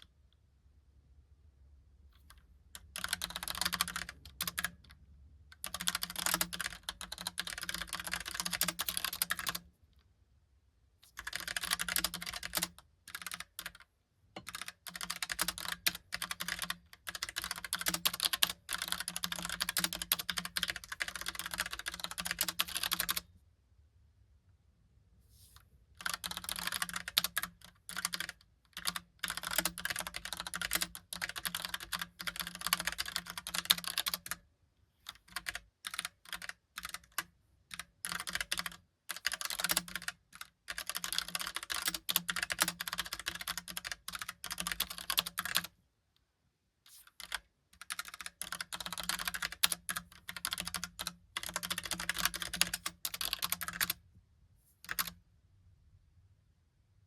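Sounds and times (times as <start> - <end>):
mechanical keyboard typing: 2.8 - 9.7, 11.2 - 23.2, 26.0 - 34.4, 35.1 - 45.7, 47.1 - 54.0, 54.9 - 55.2.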